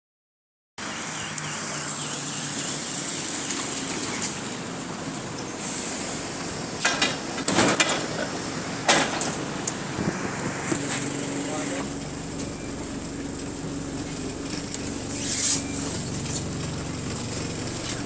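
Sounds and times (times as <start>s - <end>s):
bus engine and road noise: 0.8s - 18.0s
thin high whine: 5.6s - 18.0s.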